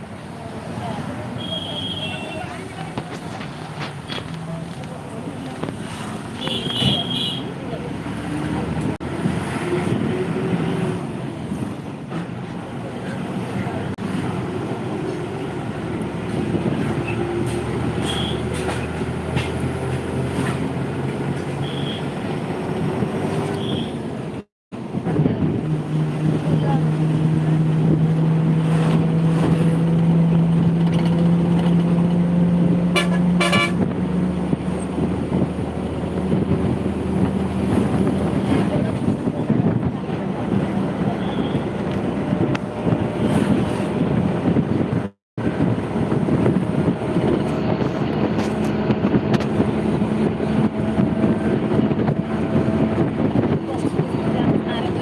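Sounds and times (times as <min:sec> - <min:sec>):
engine noise: 0:00.0 - 0:55.0
wind: 0:00.0 - 0:55.0
long low horn blast: 0:32.7 - 0:34.3
short higher horn toots: 0:32.9 - 0:33.8.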